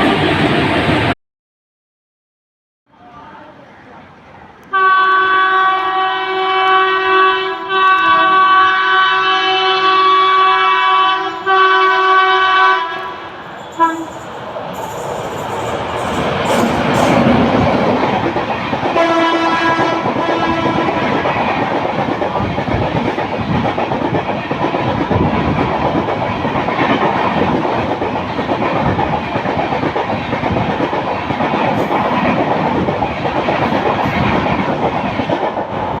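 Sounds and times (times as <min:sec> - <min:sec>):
train rushing past: 0:00.0 - 0:01.2, 0:03.5 - 0:36.0
locomotive horn blast: 0:04.7 - 0:14.3, 0:19.0 - 0:21.0.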